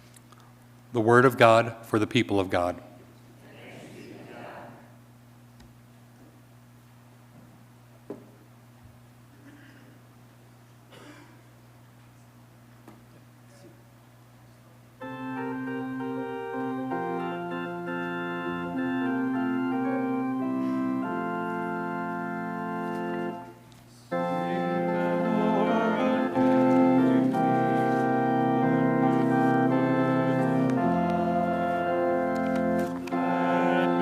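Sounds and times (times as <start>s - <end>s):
church organ chords: 0.9s - 2.9s, 14.9s - 34.0s.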